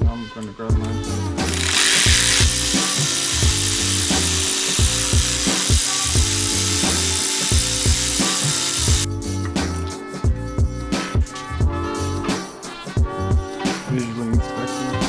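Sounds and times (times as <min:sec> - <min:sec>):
background music with steady beat: 0:00.0 - 0:15.0
socket ratchet rasping: 0:01.4 - 0:09.1.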